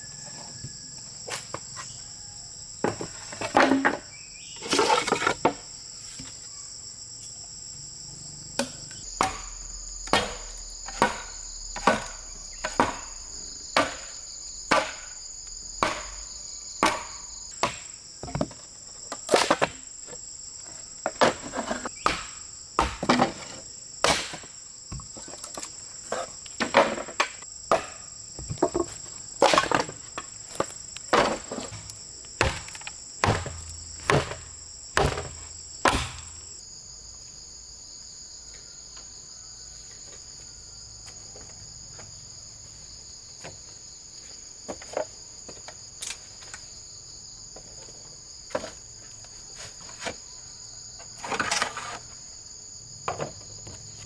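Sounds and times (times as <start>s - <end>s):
insects chirring: 0.0s - 54.0s
tool striking bamboo: 8.6s - 17.9s, 22.0s - 23.4s, 24.0s - 24.5s, 27.7s - 28.1s, 31.1s - 36.5s.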